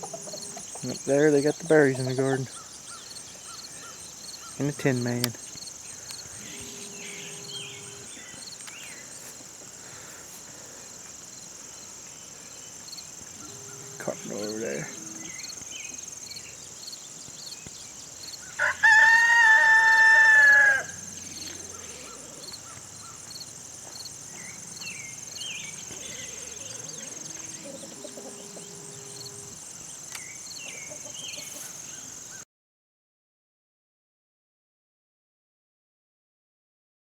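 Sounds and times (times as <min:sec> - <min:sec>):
faint bird chirps: 0:00.0 - 0:09.3, 0:24.3 - 0:32.4
high insect drone: 0:00.0 - 0:32.4
rooster crowing: 0:06.3 - 0:08.4, 0:13.3 - 0:15.4, 0:18.4 - 0:23.2, 0:25.8 - 0:29.6.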